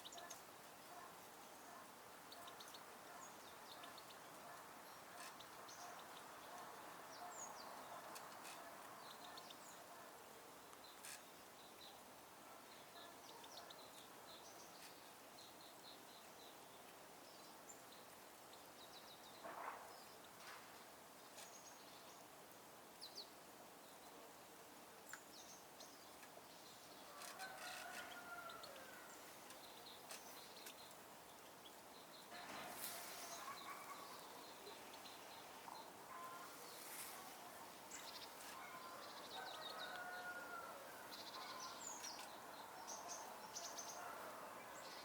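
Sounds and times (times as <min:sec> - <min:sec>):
songbirds chirping: 0:00.0 - 0:45.0
distant rooster crowing: 0:27.0 - 0:29.2, 0:38.5 - 0:41.9.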